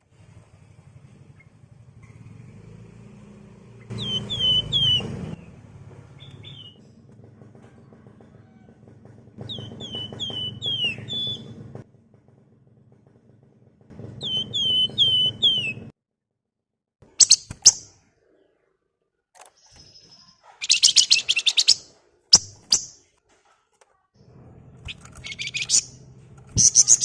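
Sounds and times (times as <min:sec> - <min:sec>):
birds down-slurred whistles: 0:03.8 - 0:05.5, 0:06.2 - 0:06.8, 0:09.5 - 0:11.5, 0:14.2 - 0:15.9, 0:19.6 - 0:22.9, 0:24.9 - 0:26.0
birds shrill rapid chattering: 0:03.9 - 0:05.4, 0:06.2 - 0:06.8, 0:09.4 - 0:11.5, 0:14.2 - 0:15.9, 0:17.2 - 0:18.0, 0:19.6 - 0:23.0, 0:24.8 - 0:27.0.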